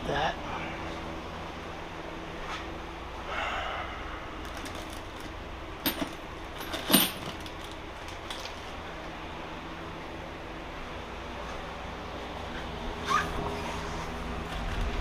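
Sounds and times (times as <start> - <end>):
low steady hum: 0.0 - 15.0
metal tools clinking: 4.6 - 8.6.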